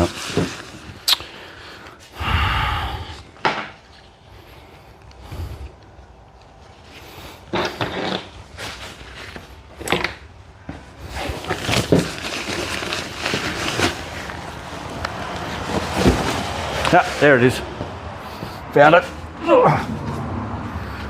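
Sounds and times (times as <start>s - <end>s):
rummaging through gear: 0.0s - 1.0s, 5.8s - 20.2s.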